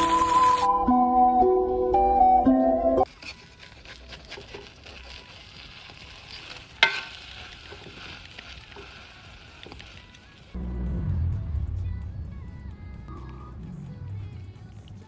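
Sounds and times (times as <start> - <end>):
food sizzling in a pan: 0.0 - 0.7, 4.8 - 10.6.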